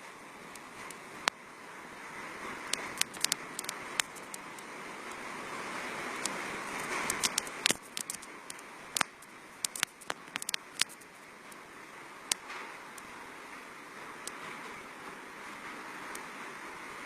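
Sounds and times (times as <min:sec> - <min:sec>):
sharp clicks and knocks: 0:02.7 - 0:04.6, 0:06.2 - 0:11.1.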